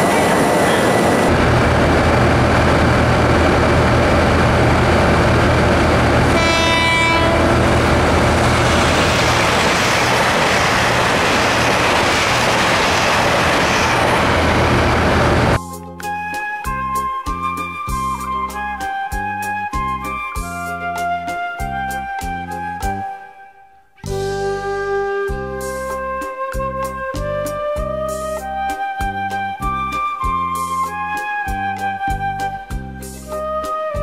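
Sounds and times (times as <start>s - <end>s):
train rumbling: 0.0s - 15.6s
train horn: 6.2s - 11.0s.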